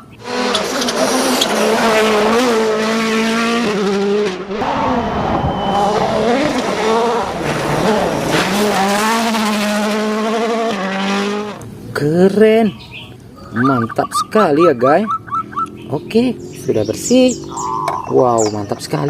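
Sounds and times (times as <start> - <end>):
race car engine revving: 0.0 - 11.7.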